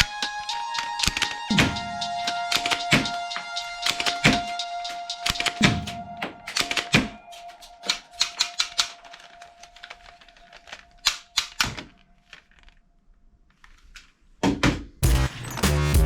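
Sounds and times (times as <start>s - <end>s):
toy gun plastic clicking: 6.5s - 12.8s.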